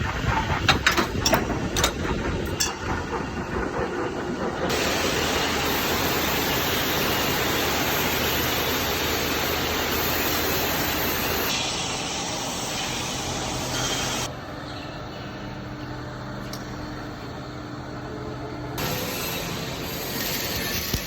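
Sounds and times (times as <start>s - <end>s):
factory machinery hissing: 0.0s - 14.4s, 18.1s - 21.0s.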